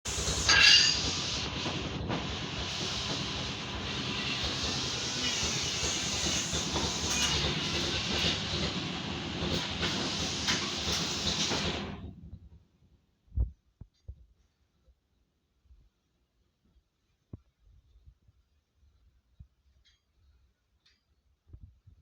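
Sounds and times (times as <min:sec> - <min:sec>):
grinder sharpening saw blade: 0:00.5 - 0:01.0.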